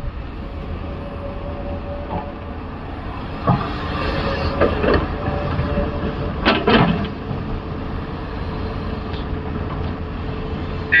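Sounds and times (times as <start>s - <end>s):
excavator diesel engine rumbling: 0.0s - 11.0s.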